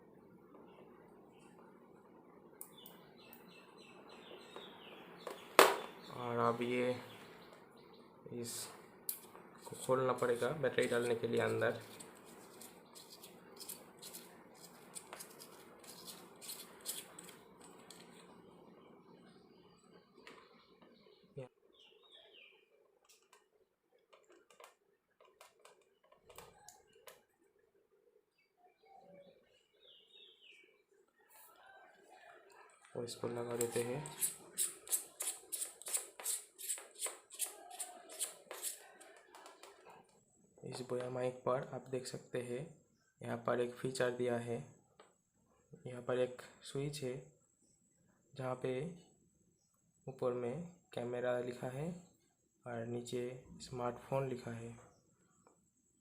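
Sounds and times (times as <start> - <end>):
plastic parts scraping and rustling: 10.8 - 18.4.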